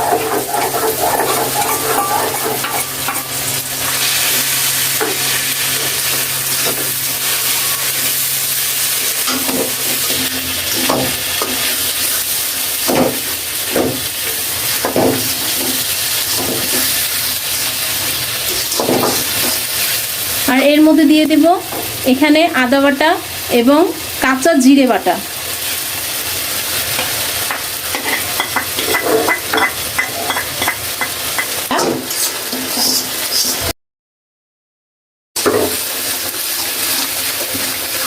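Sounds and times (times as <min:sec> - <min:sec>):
spatula scraping and stirring: 0:00.0 - 0:03.3, 0:18.5 - 0:19.9, 0:26.9 - 0:30.8
paste sizzling in hot oil: 0:00.0 - 0:33.7, 0:35.4 - 0:38.0.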